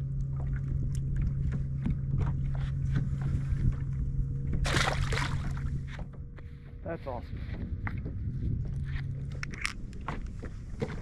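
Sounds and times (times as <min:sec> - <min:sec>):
low hum: 0:00.0 - 0:11.0
water splashing: 0:04.6 - 0:05.9.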